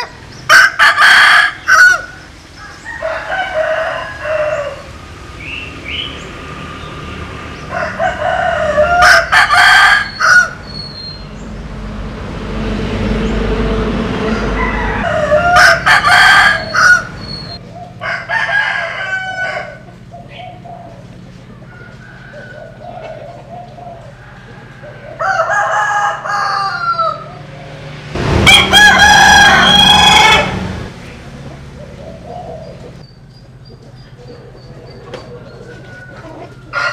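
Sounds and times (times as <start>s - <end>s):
roosters crowing: 0.0s - 11.3s, 13.0s - 33.0s, 33.9s - 36.9s
low rumbling noise: 11.2s - 17.7s, 26.8s - 33.0s.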